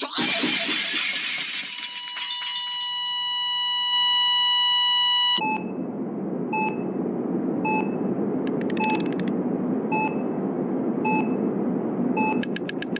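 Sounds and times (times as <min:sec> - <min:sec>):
steady electronic beep tone: 0:04.7 - 0:09.2, 0:09.9 - 0:10.4, 0:11.0 - 0:12.6
short electronic beeps: 0:05.4 - 0:05.9, 0:06.5 - 0:06.9, 0:07.6 - 0:08.1, 0:08.7 - 0:09.2, 0:09.9 - 0:10.3, 0:11.0 - 0:11.5, 0:12.2 - 0:12.5.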